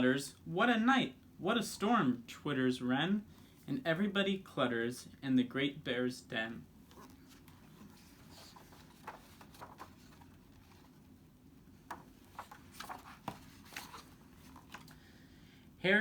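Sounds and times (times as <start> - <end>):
paper rustling: 6.8 - 15.0
book pages turning with taps: 6.9 - 11.0, 11.8 - 15.0.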